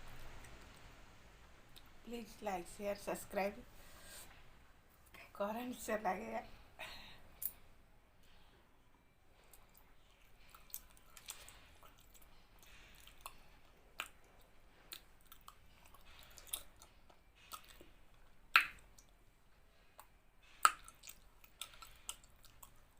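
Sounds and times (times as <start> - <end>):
chewing mouth sounds: 9.4 - 19.2, 19.8 - 22.9.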